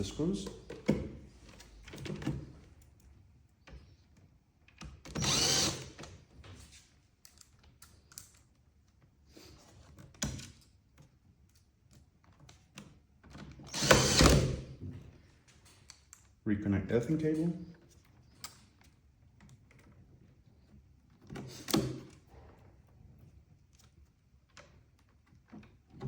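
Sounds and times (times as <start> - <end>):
cordless screwdriver running: 5.1 - 6.0, 13.7 - 14.6.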